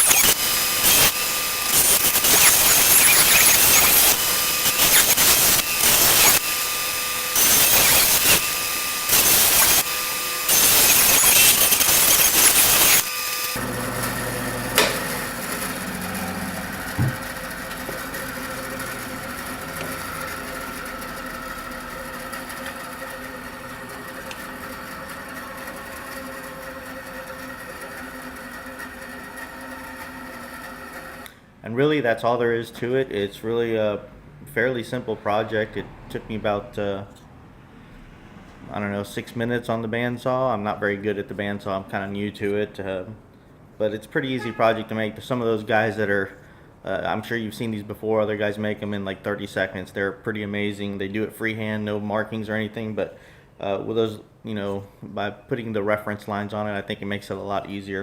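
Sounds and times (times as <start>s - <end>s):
bandsaw cutting wood: 0.0s - 31.4s
bandsaw running: 0.0s - 31.4s.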